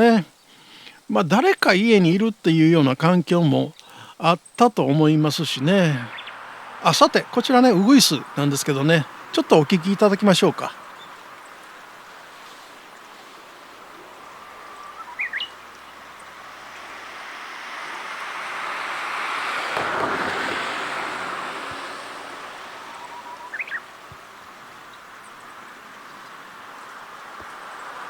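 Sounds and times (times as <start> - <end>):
car tyres passing: 1.6 - 28.0
bird song whistle: 6.0 - 6.5, 9.9 - 16.3, 22.7 - 25.4.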